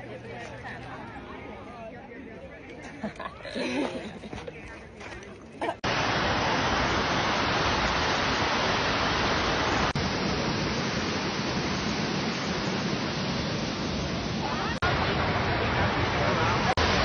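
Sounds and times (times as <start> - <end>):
steady rushing noise: 5.8 - 17.0.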